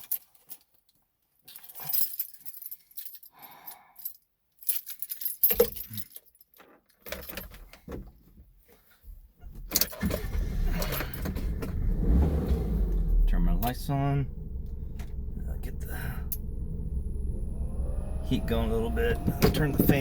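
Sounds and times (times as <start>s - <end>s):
keys jangling: 1.5s - 6.6s
low steady rumble: 10.6s - 20.0s.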